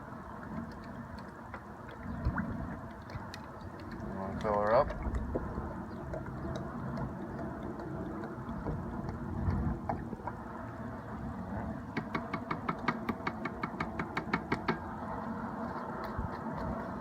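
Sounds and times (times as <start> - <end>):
steady low rumble: 4.0 - 11.9.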